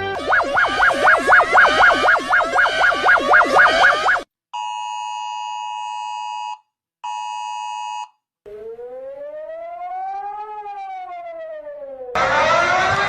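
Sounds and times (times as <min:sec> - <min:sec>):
siren wail: 0:00.0 - 0:04.2, 0:08.5 - 0:13.0
two-tone alert blasts: 0:00.0 - 0:04.2.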